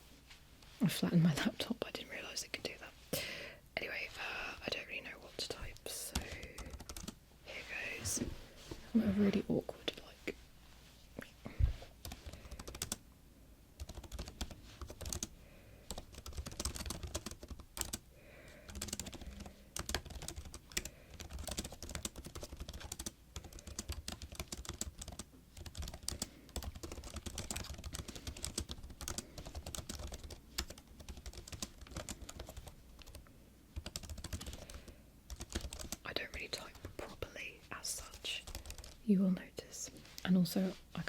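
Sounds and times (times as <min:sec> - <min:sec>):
laptop keyboard typing: 0:06.1 - 0:07.2, 0:12.0 - 0:13.0, 0:13.8 - 0:33.2, 0:33.8 - 0:36.9, 0:38.1 - 0:39.0.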